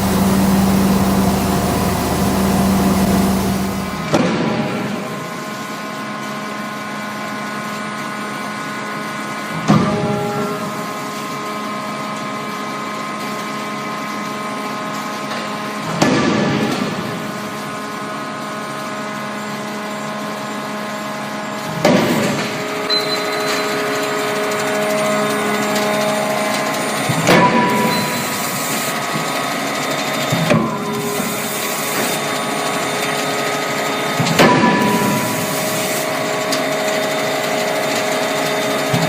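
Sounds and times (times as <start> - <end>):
machine humming: 0.0 - 5.3, 18.1 - 39.0.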